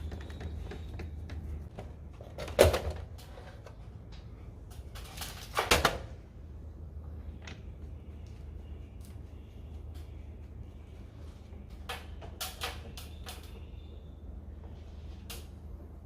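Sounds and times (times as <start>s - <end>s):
tools and parts clicking and knocking: 0.0s - 6.1s, 11.7s - 13.7s.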